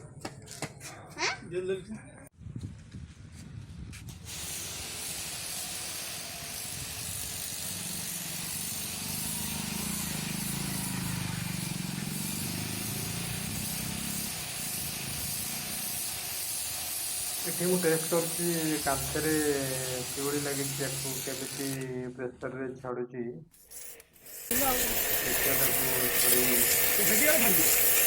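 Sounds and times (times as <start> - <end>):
pressure washer jet hissing: 4.1 - 21.9, 23.6 - 28.0.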